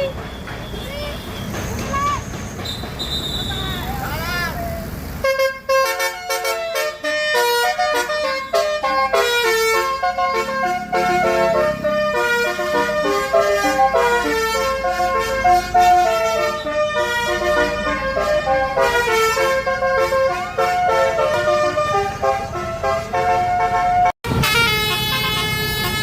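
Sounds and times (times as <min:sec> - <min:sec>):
multi-tone air horn melody: 0:05.2 - 0:26.0.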